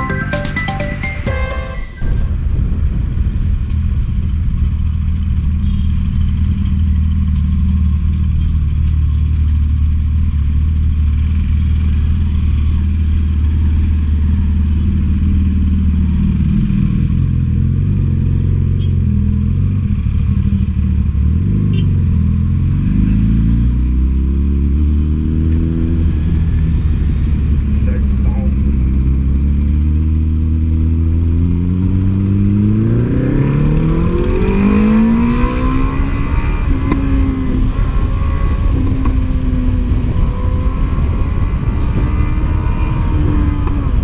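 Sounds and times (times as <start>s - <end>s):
intro music: 0.0s - 3.3s
motorcycle engine revving: 2.1s - 44.0s.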